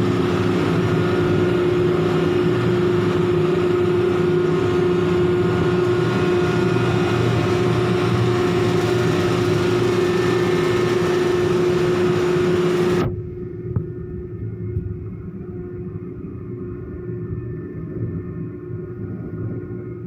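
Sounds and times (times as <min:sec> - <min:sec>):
heavy machinery engine drone: 0:00.0 - 0:20.0.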